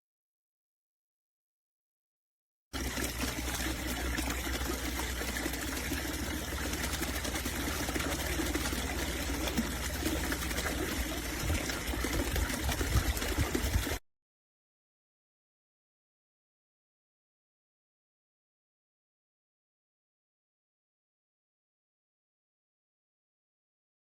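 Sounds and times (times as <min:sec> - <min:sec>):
low steady pump hum: 0:02.8 - 0:14.0
water trickling and splashing: 0:02.8 - 0:14.0.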